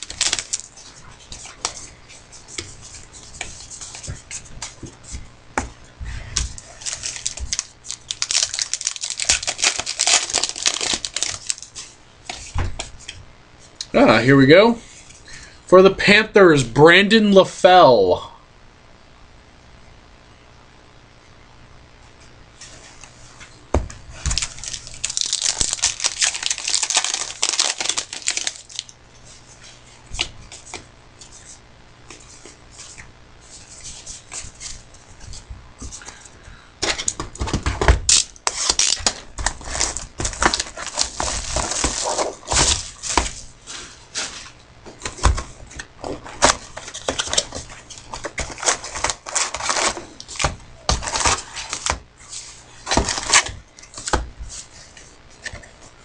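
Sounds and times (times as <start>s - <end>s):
wrappers tearing and crinkling: 0.0s - 1.6s, 6.6s - 11.9s, 24.2s - 29.0s, 38.1s - 44.4s, 46.1s - 51.9s, 52.8s - 54.1s.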